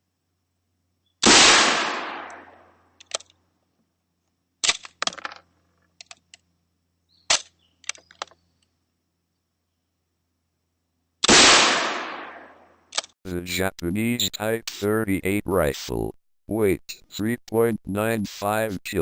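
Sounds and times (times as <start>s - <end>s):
rifle shot with echo: 1.2s - 2.5s, 11.3s - 12.5s.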